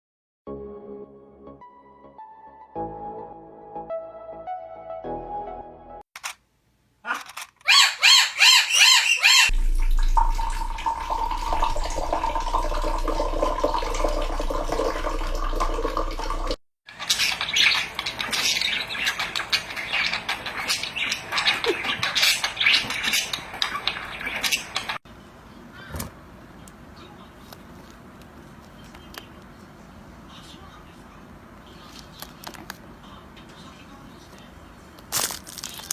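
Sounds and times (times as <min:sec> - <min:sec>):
birds squawking: 0:07.1 - 0:09.5, 0:16.9 - 0:25.0
low hum: 0:09.5 - 0:16.5
birds chattering and clicking: 0:16.9 - 0:25.0.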